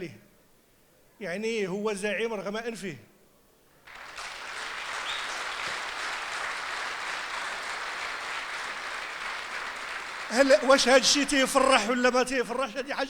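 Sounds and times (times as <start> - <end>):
audience applauding: 3.9 - 11.9.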